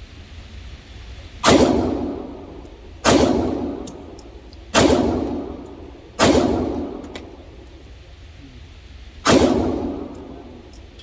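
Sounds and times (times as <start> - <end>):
pistol shots with ringing tail: 1.4 - 7.8, 9.2 - 11.0.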